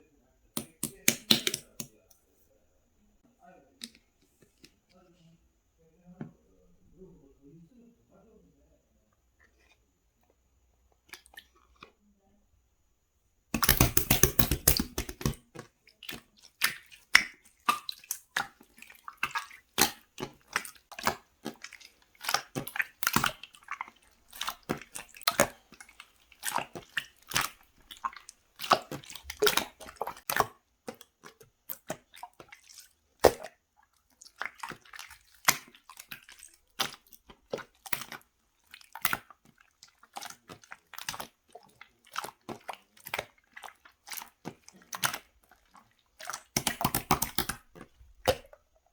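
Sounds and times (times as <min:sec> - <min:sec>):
slime squishing with wet pops: 0:00.6 - 0:02.1, 0:11.0 - 0:12.0, 0:13.5 - 0:48.9.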